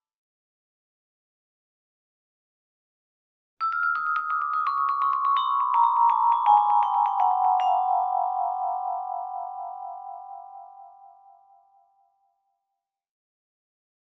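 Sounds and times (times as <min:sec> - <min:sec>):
vibraphone mallet run: 0:03.6 - 0:10.7.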